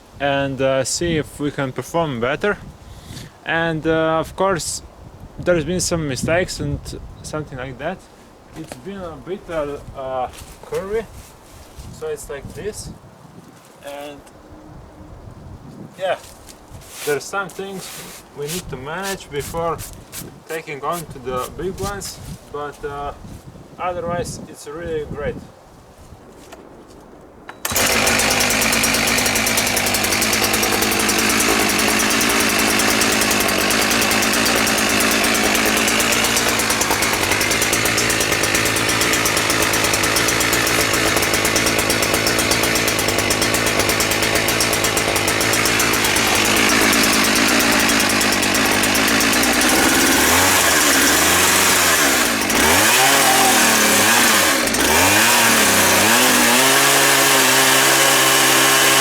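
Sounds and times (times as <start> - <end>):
chainsaw milling a log: 17.0 - 22.7, 27.6 - 59.0.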